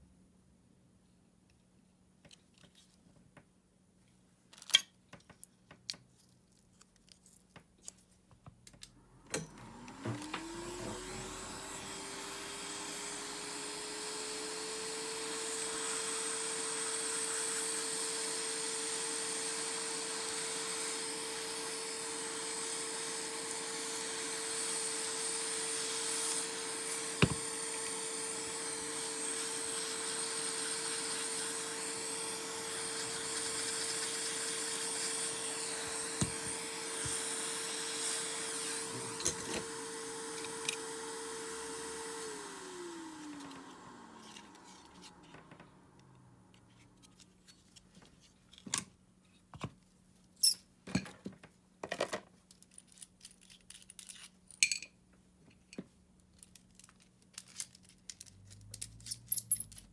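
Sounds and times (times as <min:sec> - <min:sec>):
small electric motor running: 0:10.5 - 0:45.1.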